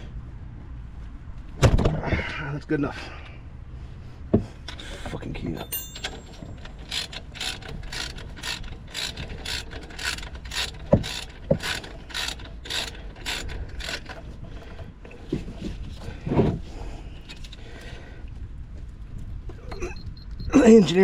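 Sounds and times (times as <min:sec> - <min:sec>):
socket wrench ratchet clicking: 0:05.8 - 0:14.3.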